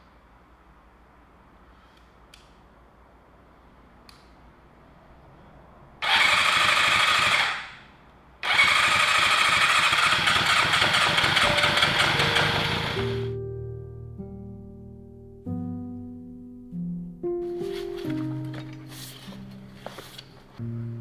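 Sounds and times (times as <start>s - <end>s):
motorcycle engine starting: 6.0s - 7.8s, 8.4s - 13.3s.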